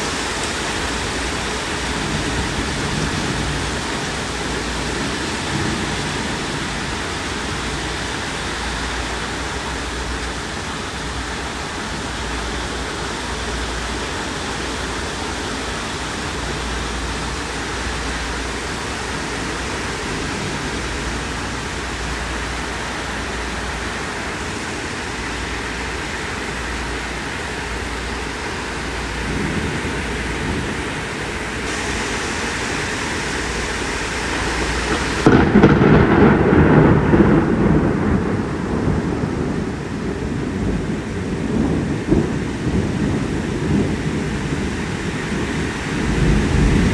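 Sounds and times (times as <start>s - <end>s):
heavy rain falling: 0.0s - 46.9s.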